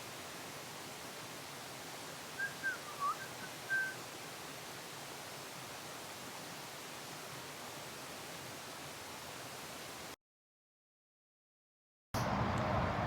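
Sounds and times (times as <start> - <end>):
steady hiss: 0.0 - 10.2
person whistling: 2.4 - 4.0.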